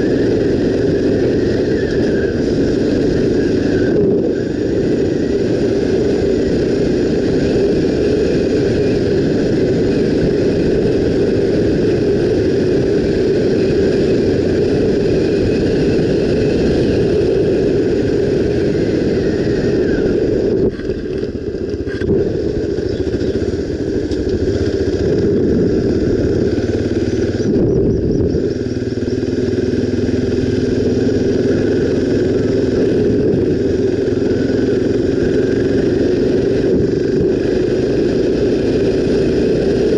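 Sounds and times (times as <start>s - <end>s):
motorcycle engine droning: 0.0s - 39.9s.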